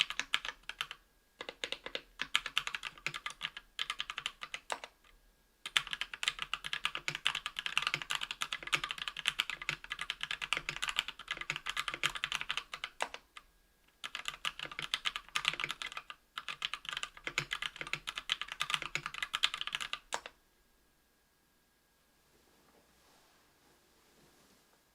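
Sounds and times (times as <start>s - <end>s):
fast typing on keyboard: 0.0s - 13.4s, 14.0s - 20.4s.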